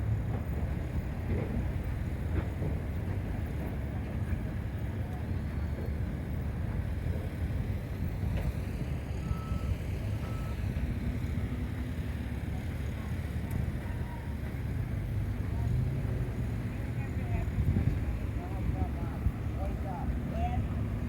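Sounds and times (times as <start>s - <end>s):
road traffic rumble: 0.0s - 21.0s
faint beeps: 9.2s - 10.6s.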